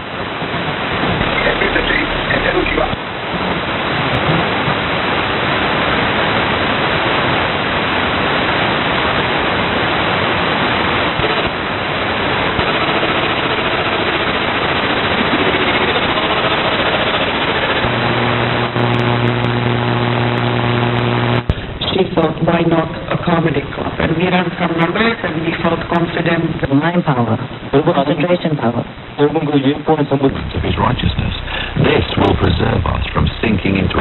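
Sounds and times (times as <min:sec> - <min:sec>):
low hum with overtones: 0:00.0 - 0:04.1, 0:10.0 - 0:34.0
radio static hiss: 0:00.0 - 0:34.0.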